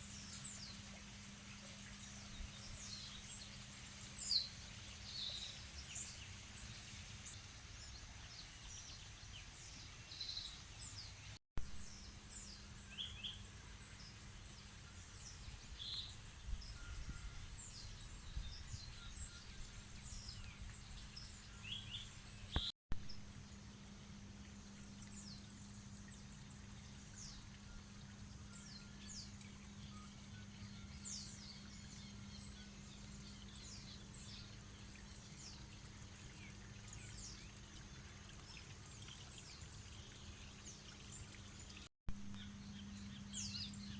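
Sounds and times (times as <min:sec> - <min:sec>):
birds chirping: 0:16.7 - 0:22.7.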